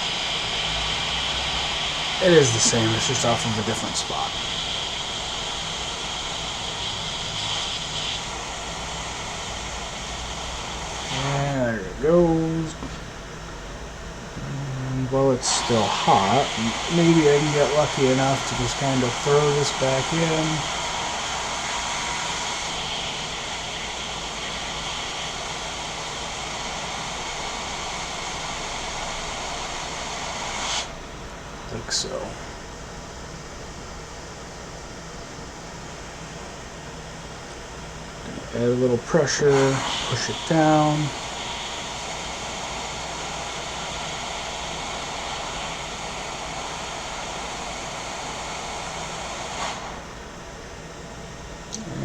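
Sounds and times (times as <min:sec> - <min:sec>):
high whine: 0:00.0 - 0:30.1, 0:51.6 - 0:52.0
hot air station blowing: 0:00.0 - 0:52.0.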